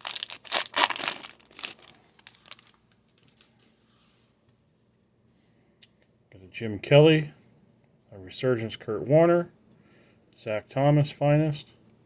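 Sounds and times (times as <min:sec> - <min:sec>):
foil wrapper crinkling and tearing: 0:00.0 - 0:03.5.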